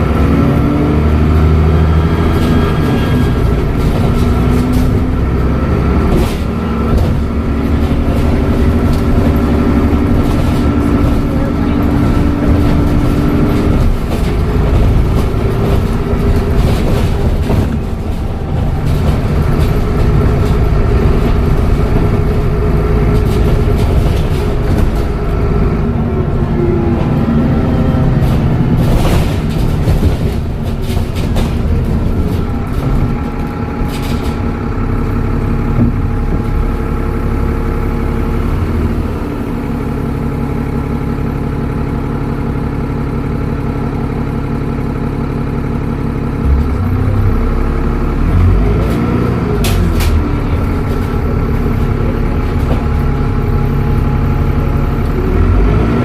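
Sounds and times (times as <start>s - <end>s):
bus diesel engine: 0.0s - 56.0s.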